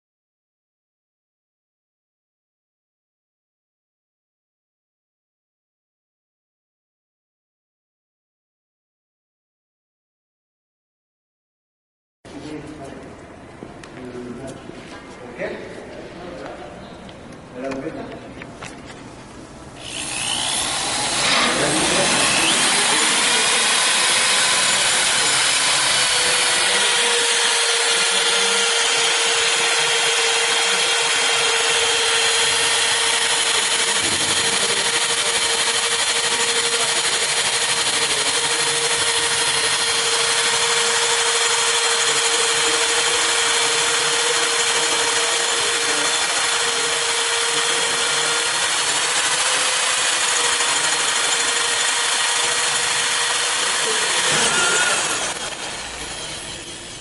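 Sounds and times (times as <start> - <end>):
corded drill motor whine: 19.8 - 57.0.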